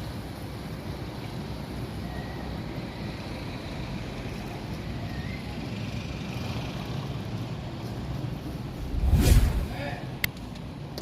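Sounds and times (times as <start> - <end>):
distant traffic rumble: 0.0 - 11.0
wind noise on microphone: 8.7 - 9.9.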